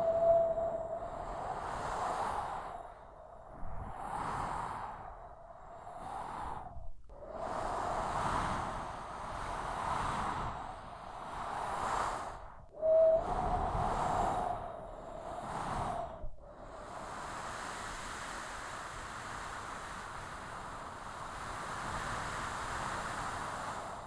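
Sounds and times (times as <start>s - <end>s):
strong wind blowing: 0.0s - 12.0s, 12.8s - 16.3s.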